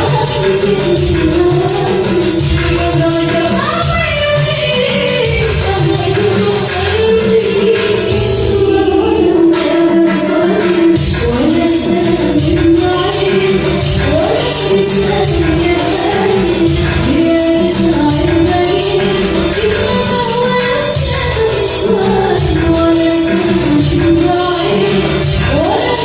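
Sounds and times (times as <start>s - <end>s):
instrumental backing: 0.0s - 26.0s
percussion beat: 0.0s - 26.0s
woman singing: 0.0s - 26.0s.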